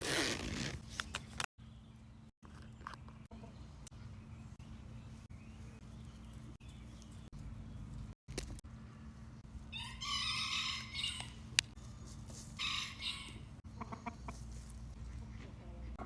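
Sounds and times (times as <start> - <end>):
rooster crowing: 9.7 - 11.4.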